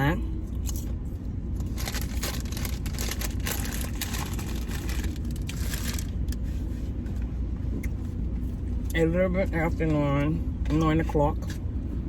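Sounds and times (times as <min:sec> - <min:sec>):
car low rumble inside cabin: 0:00.0 - 0:12.0
crackling and rustling: 0:01.6 - 0:07.1.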